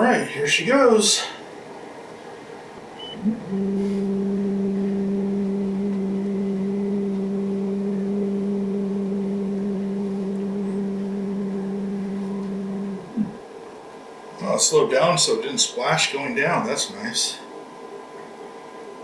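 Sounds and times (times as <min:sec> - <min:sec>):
stepper motor hum: 0:03.0 - 0:13.4.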